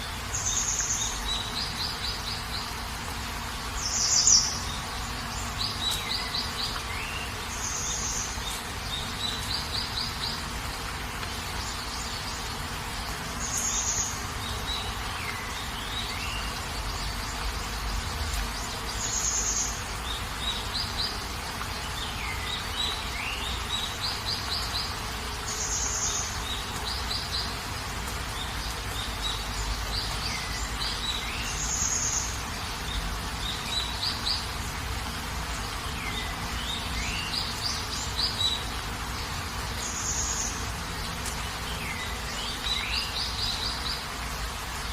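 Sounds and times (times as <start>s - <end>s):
steady rain hiss: 0.0s - 44.9s.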